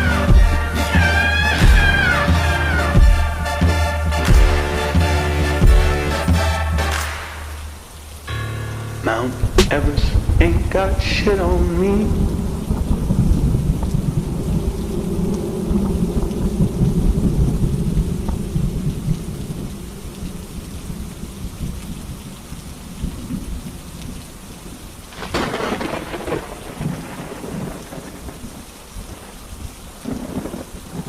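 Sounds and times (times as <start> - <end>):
thunder rumbling: 0.0 - 23.8, 25.1 - 31.0
rain falling: 0.0 - 31.0
thunder crackle: 9.0 - 21.8, 25.1 - 31.0.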